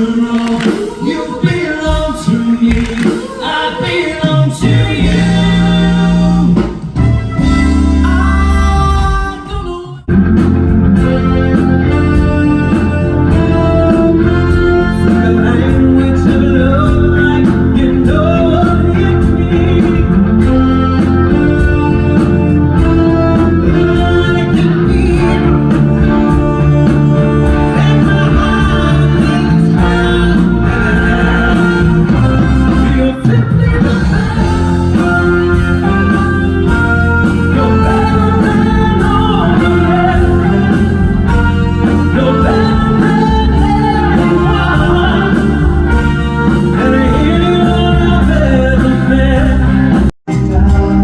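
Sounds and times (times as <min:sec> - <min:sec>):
person singing: 0:00.0 - 0:06.8, 0:07.4 - 0:51.0
rock band music: 0:00.0 - 0:51.0.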